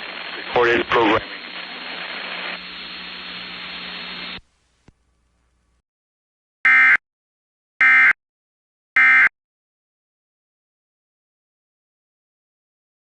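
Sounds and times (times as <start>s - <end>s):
buzzy data bursts: 0.0s - 4.4s
radio static hiss: 0.0s - 5.7s.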